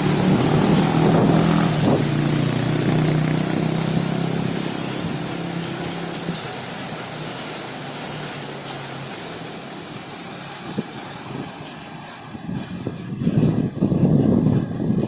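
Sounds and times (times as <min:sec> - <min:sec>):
strong wind: 0:00.0 - 0:05.3, 0:10.5 - 0:15.0
heavy rain: 0:00.0 - 0:15.0.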